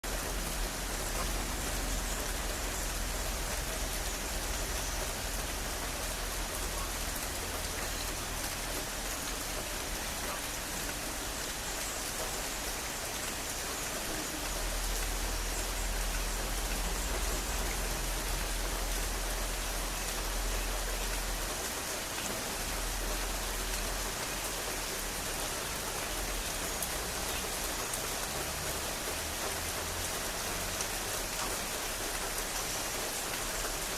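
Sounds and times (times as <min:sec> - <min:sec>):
heavy rain falling: 0:00.0 - 0:33.9.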